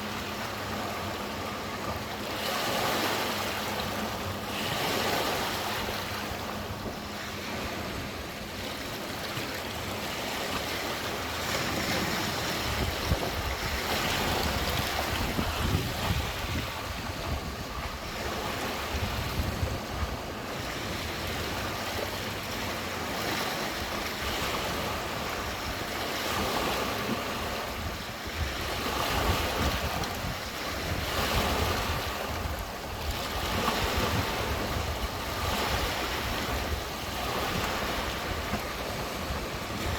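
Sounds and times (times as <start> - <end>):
lake waves washing against shore: 0.0 - 39.9
wind buffeting microphone: 11.6 - 22.4, 23.8 - 39.9.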